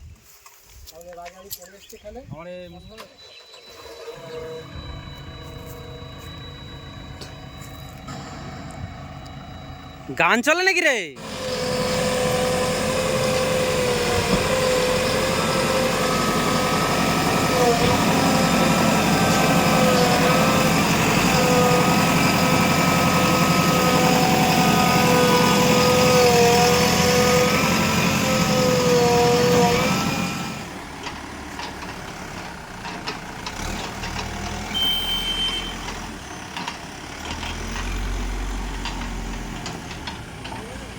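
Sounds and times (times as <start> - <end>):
machine engine running: 3.6 - 10.5, 11.2 - 34.0
loud steady stepped tone: 3.7 - 30.6, 34.7 - 36.0
low rumble: 4.5 - 10.2.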